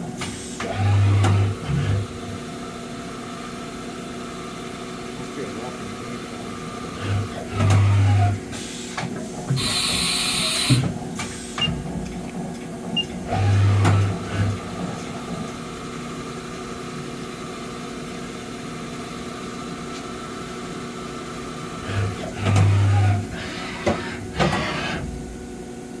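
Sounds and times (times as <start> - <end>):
machine motor hum: 4.7 - 8.5, 9.5 - 26.0.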